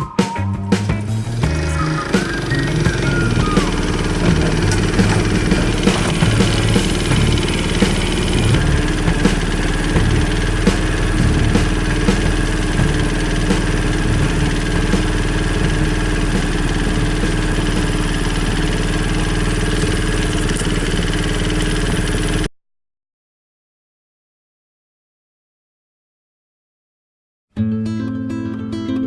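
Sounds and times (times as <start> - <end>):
motorcycle engine running: 0.0 - 22.5.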